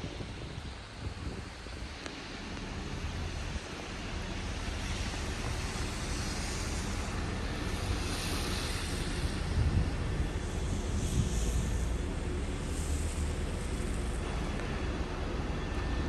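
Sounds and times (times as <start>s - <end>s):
wind buffeting microphone: 0.0s - 2.1s, 9.1s - 14.4s.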